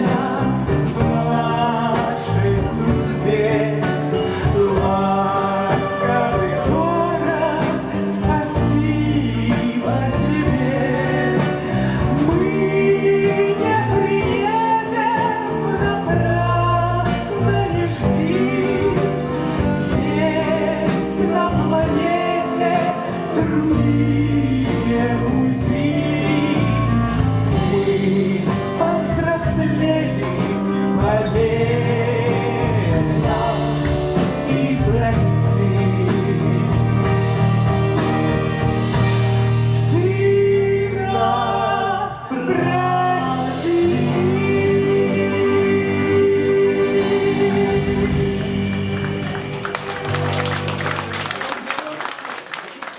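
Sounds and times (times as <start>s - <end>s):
person singing: 0.0s - 37.7s, 39.2s - 49.5s
small band playing: 0.0s - 52.9s.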